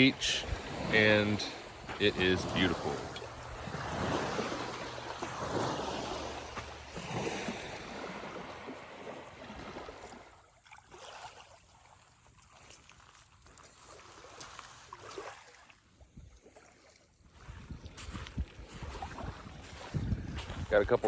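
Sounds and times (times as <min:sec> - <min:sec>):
lake waves washing onto beach: 0:00.0 - 0:11.5, 0:17.3 - 0:21.0
wind rumbling on microphone: 0:17.3 - 0:21.0.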